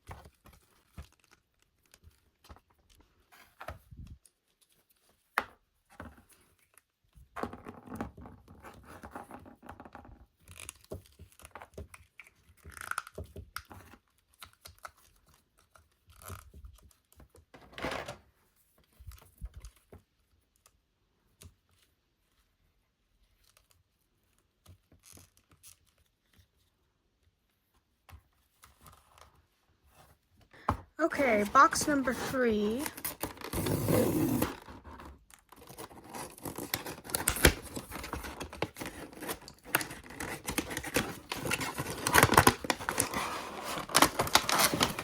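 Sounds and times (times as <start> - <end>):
packaging rustling and tearing: 31.3 - 45.0.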